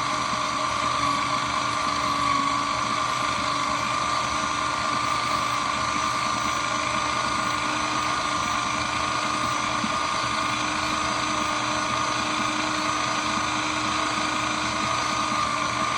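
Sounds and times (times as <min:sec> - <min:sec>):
motor hum: 0:00.0 - 0:15.9
shredder machine whine: 0:00.0 - 0:15.9.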